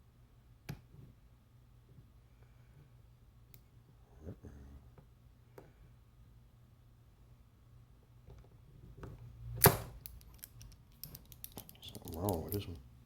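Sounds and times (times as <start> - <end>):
lock picks clicking in a lock: 9.6 - 12.8.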